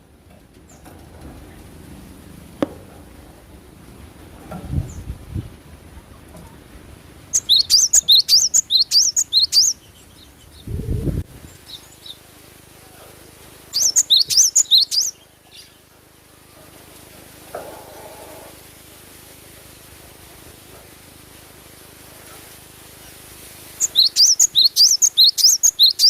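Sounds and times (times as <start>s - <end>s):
bird singing high sharp chirps: 7.3s - 10.7s, 13.7s - 15.8s, 23.8s - 26.0s.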